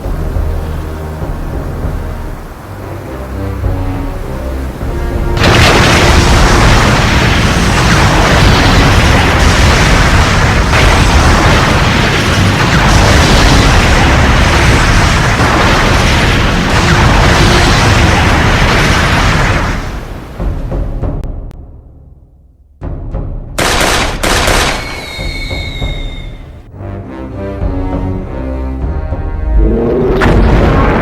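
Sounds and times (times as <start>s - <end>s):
film music: 0.0s - 31.0s
explosions and booming rumble: 4.8s - 21.3s, 29.5s - 31.0s.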